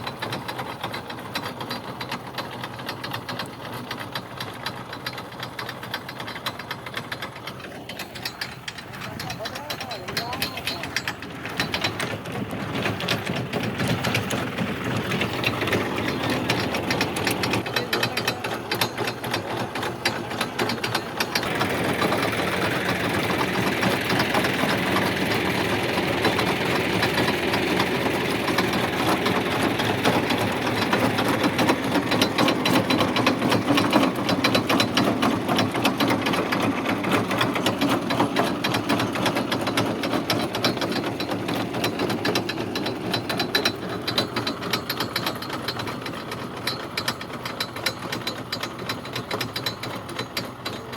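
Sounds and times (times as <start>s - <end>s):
fast mechanical rattle: 0.0s - 50.9s
harvester engine: 0.0s - 50.9s.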